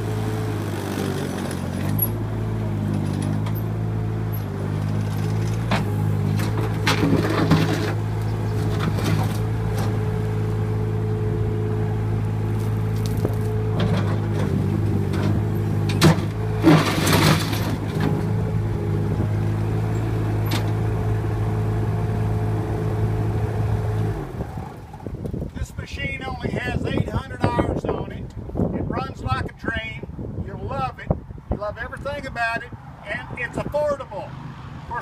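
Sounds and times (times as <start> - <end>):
diesel engine running: 0.0 - 27.3.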